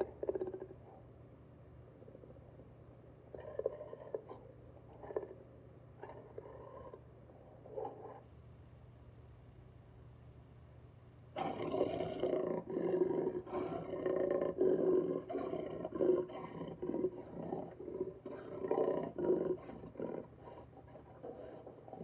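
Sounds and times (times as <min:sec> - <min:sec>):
jaguar hoarse grunts: 0:11.4 - 0:22.0.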